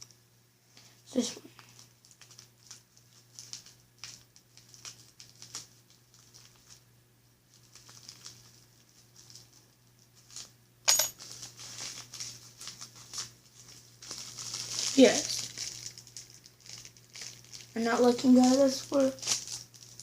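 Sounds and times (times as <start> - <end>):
packaging clicks and rustles: 1.6 - 6.8, 7.5 - 9.6, 11.2 - 20.0
sharp metallic clink: 10.9 - 11.2.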